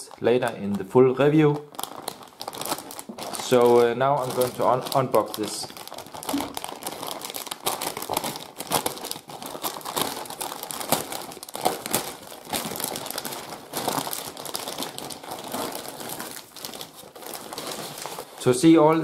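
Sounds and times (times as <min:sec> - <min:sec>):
packaging crinkling and rustling: 0:00.0 - 0:19.0.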